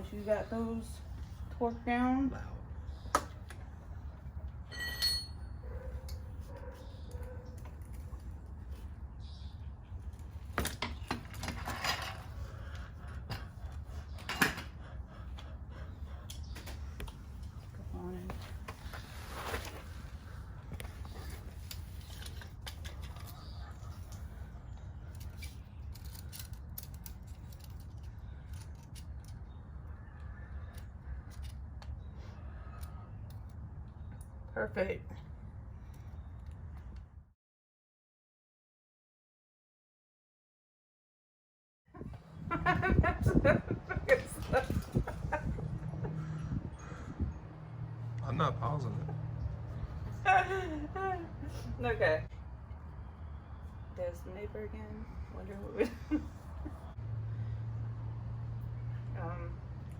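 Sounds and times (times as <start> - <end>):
metal tool clicks and clanks: 4.7 - 6.2.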